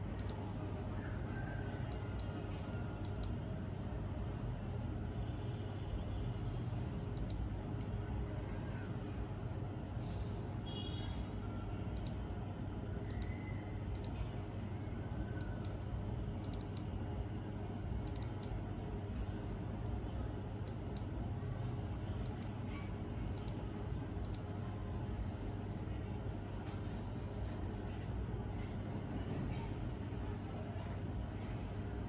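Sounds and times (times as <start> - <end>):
light clicks: 0.1 - 0.4, 7.2 - 7.9, 22.2 - 22.6, 24.2 - 24.5.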